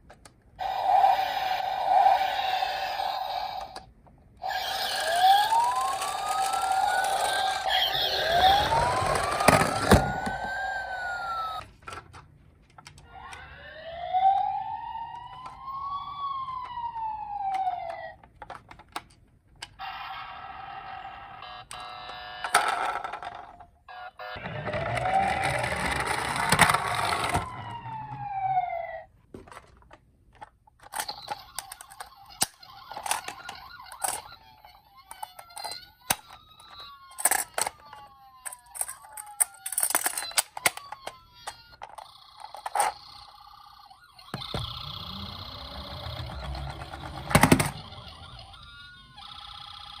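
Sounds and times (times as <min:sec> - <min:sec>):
toy electronic sirens: 0:00.6 - 0:11.7, 0:13.0 - 0:18.6, 0:19.6 - 0:29.1, 0:30.8 - 0:50.0
plastic toys clicking and knocking: 0:03.6 - 0:13.5, 0:14.2 - 0:19.8, 0:21.7 - 0:23.8, 0:24.4 - 0:28.2, 0:29.3 - 0:50.0.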